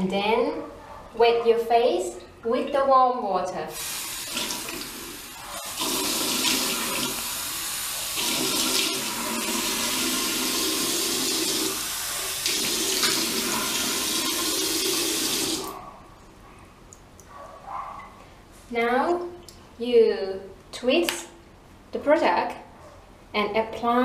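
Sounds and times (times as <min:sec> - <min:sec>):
water running from sink tap: 0:03.8 - 0:15.8.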